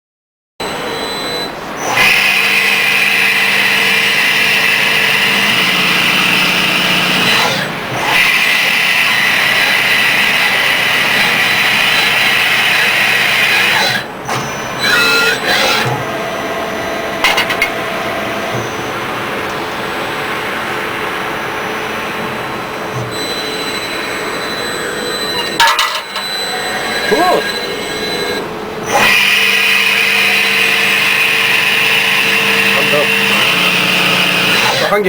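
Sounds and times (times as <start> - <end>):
engraving machine cutting: 1.8 - 20.7, 22.0 - 35.0
short wavering whine: 16.0 - 28.5.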